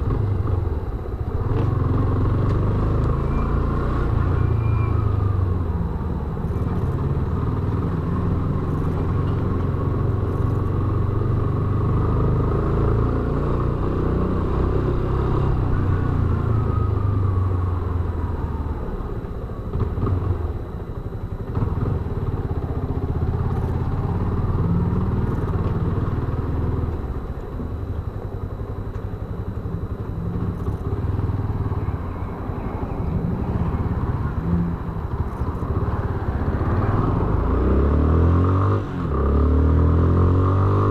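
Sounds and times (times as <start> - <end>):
motorcycle engine running: 19.6 - 37.5.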